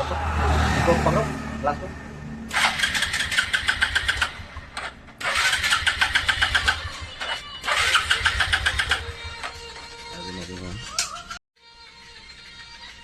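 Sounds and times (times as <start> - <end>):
motorcycle engine cranking: 2.5 - 10.0.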